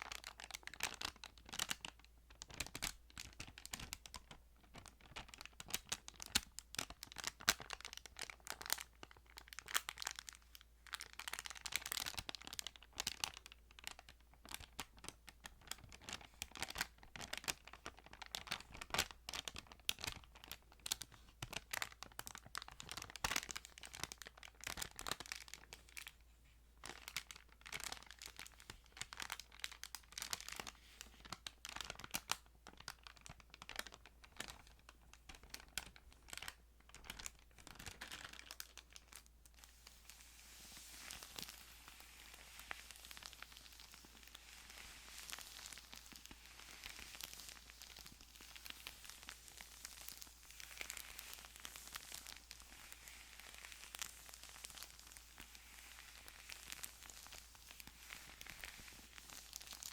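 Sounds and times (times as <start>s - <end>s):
thin pages rustling and turning: 35.3s - 59.9s.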